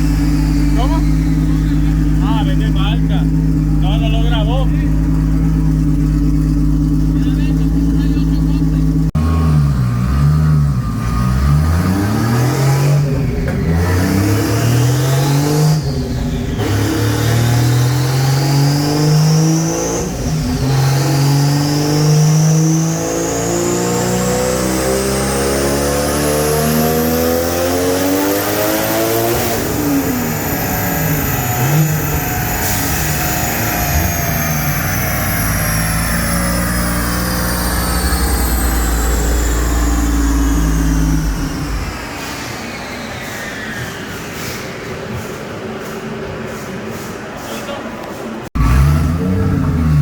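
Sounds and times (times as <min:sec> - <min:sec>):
turbo whine: 0:00.0 - 0:09.1, 0:26.8 - 0:44.5
car engine at full throttle: 0:00.0 - 0:43.5, 0:48.5 - 0:50.0.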